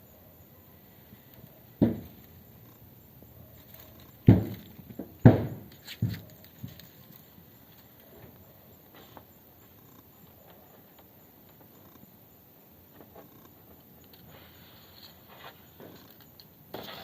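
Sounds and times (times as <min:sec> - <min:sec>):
dull thumps: 0:01.8 - 0:02.3, 0:04.2 - 0:06.9.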